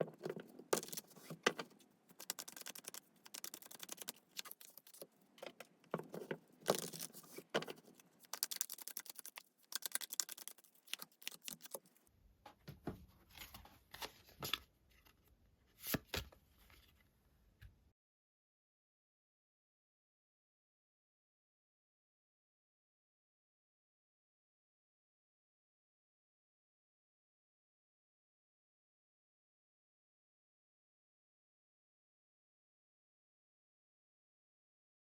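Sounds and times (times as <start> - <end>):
cards shuffling: 0.7 - 12.0.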